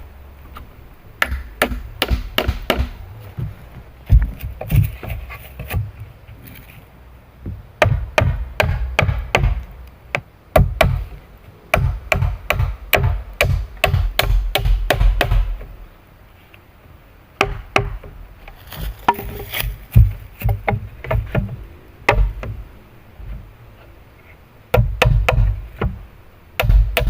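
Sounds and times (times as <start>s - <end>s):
wood being chopped: 1.2s - 3.5s, 7.5s - 11.1s, 11.7s - 15.6s, 17.4s - 22.6s, 24.7s - 26.0s, 26.6s - 27.0s.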